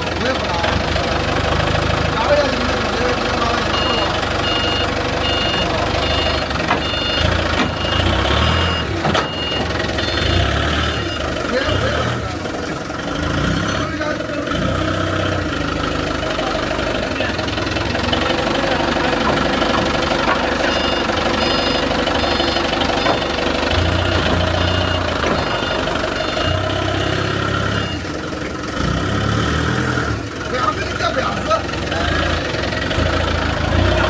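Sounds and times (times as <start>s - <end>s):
diesel engine idling: 0.0s - 34.0s.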